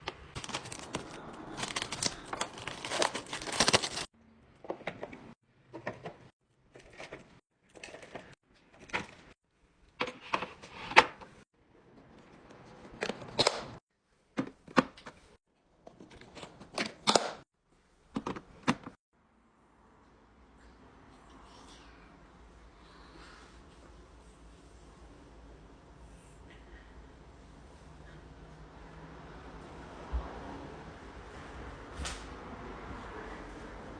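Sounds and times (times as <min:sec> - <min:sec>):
plastic packaging crinkling: 0:00.4 - 0:04.1.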